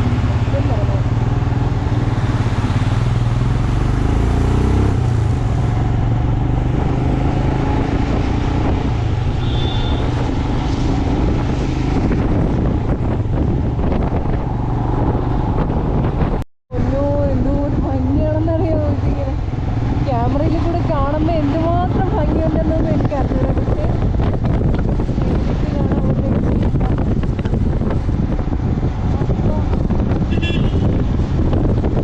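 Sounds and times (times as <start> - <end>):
motorcycle engine running: 0.0 - 32.0
wind rushing over microphone: 0.0 - 32.0.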